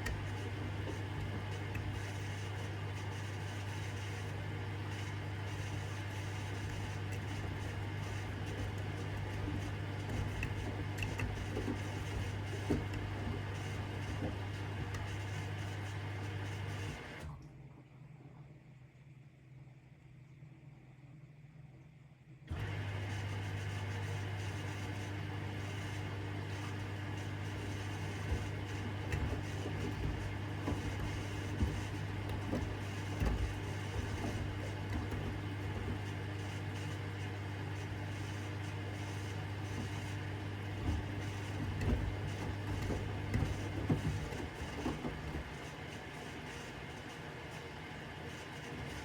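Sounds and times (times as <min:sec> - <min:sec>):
washing machine motor hum: 0:00.0 - 0:17.4, 0:22.5 - 0:49.0
wet laundry thumping and sloshing: 0:27.2 - 0:46.3.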